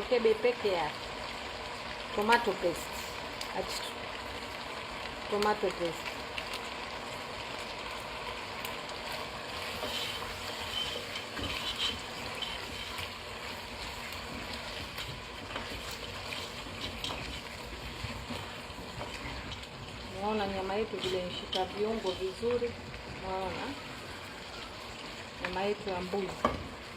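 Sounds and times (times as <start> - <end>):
meat sizzling in a pot: 0.0 - 26.9.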